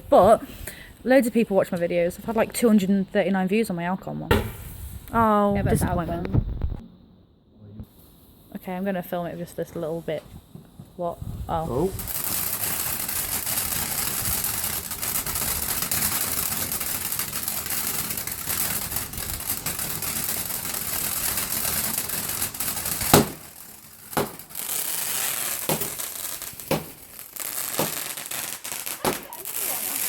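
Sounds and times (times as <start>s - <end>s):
fireworks crackling hiss: 0.0s - 3.2s, 4.3s - 6.8s, 7.9s - 30.0s
fireworks loud bang: 4.3s - 5.0s, 12.0s - 30.0s
fireworks small pops: 4.3s - 5.2s, 12.0s - 30.0s.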